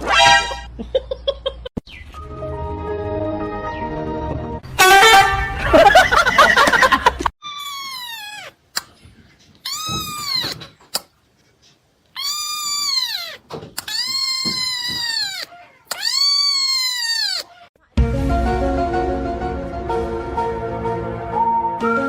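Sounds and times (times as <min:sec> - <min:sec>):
cat meowing loudly: 0:07.4 - 0:08.6, 0:09.6 - 0:10.6, 0:12.2 - 0:17.7.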